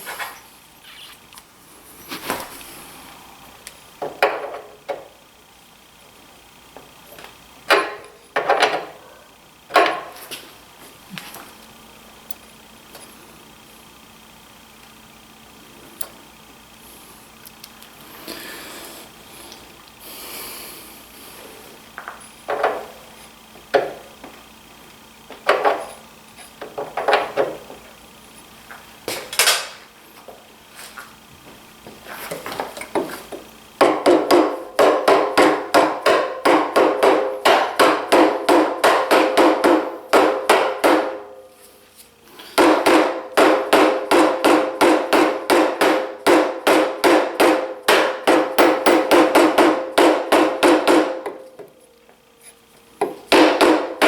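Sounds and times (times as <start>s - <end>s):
hammer tapping on metal: 33.8s - 41.3s, 42.6s - 51.7s, 53.0s - 54.0s.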